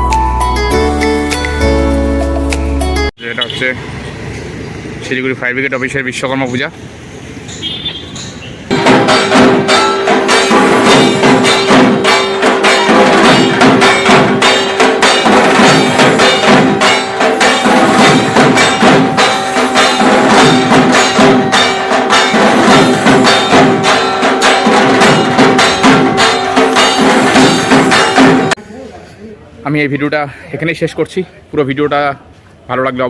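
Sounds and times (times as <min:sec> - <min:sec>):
rhythmic percussion music: 0:00.0 - 0:03.1, 0:08.1 - 0:28.6.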